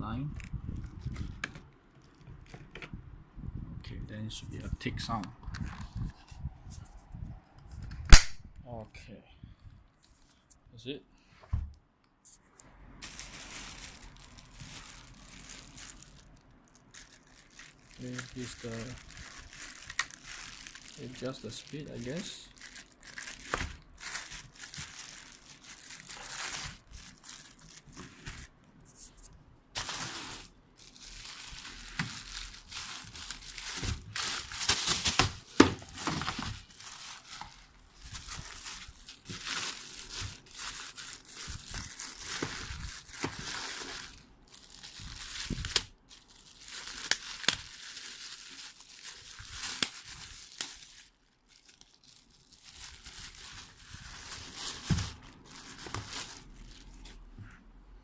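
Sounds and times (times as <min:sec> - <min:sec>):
plastic packaging crinkling: 0:13.0 - 0:57.3.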